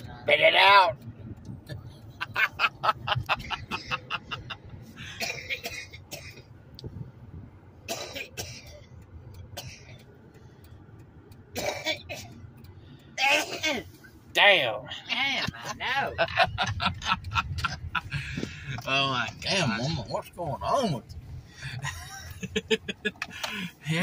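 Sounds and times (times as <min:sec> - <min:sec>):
woman coughing: 0:05.1 - 0:06.4, 0:13.2 - 0:13.8.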